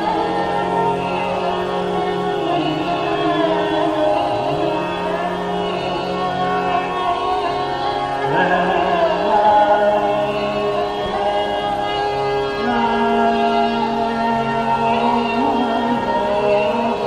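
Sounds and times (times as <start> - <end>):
man singing classical vocal: 8.2 - 11.7.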